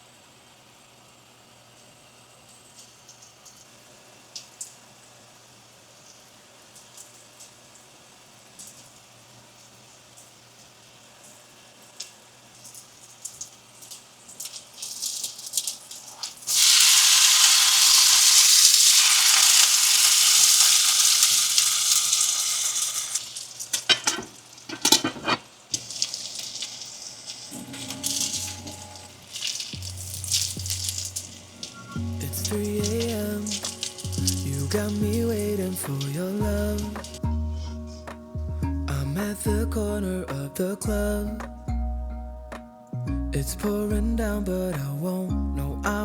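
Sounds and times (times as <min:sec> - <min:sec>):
batter sizzling in hot pan: 0:02.8 - 0:37.2
utensils tapping and clicking: 0:27.5 - 0:37.2.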